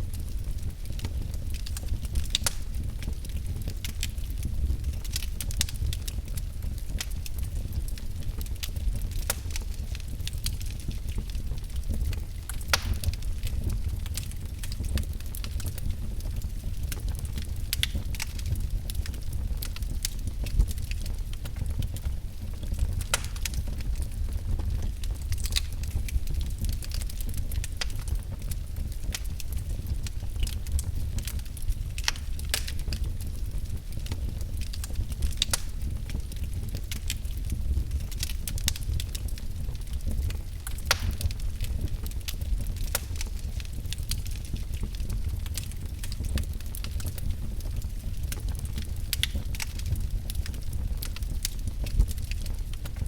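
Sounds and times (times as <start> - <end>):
low rumble of flames: 0.0 - 53.0
wood fire crackling and popping: 0.0 - 53.0.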